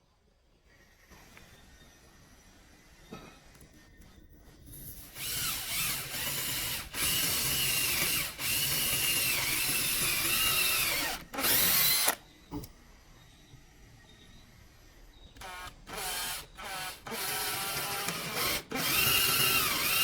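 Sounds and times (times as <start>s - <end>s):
power tool whining: 5.0s - 12.2s, 15.4s - 20.0s.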